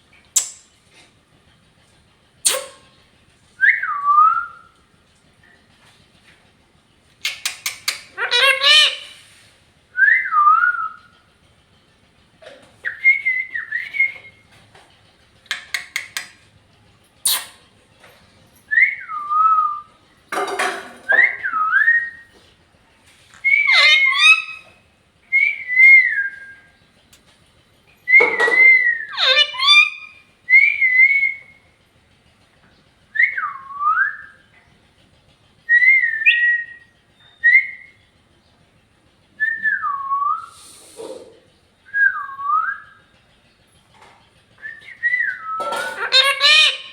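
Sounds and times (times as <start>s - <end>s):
parrot harsh raspy calls: 2.4s - 3.0s, 7.2s - 9.4s, 17.2s - 17.6s, 23.3s - 24.8s, 28.2s - 30.2s, 45.6s - 46.9s
parrot whistling: 7.2s - 9.2s, 12.8s - 14.4s, 21.1s - 22.3s, 23.3s - 26.7s, 28.1s - 31.6s, 44.6s - 46.9s
sharp clicks: 15.5s - 16.4s.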